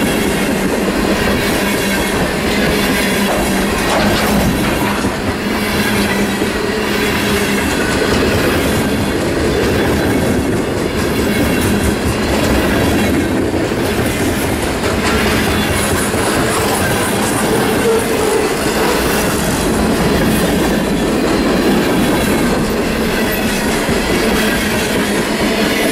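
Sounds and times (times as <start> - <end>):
freight train wheels clacking: 0.0 - 25.9.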